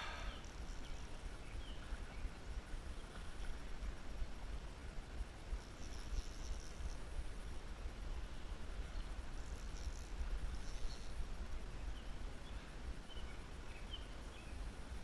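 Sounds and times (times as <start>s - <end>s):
even hiss: 0.0s - 1.2s
faint high-pitched chirping: 8.9s - 14.7s.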